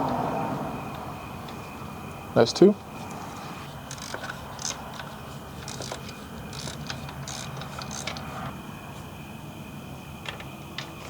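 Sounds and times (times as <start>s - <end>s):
hand ratchet clicking: 3.9s - 8.3s.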